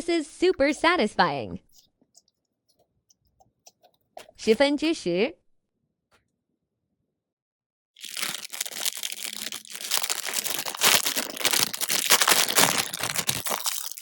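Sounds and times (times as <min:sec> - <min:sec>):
plastic packaging crinkling and tearing: 0:08.0 - 0:14.0.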